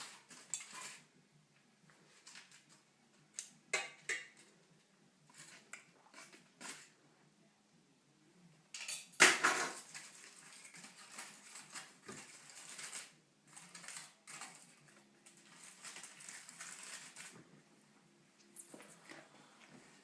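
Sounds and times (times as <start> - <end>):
utensils clattering against cookware: 0.0 - 1.1, 3.4 - 4.5, 8.8 - 13.1.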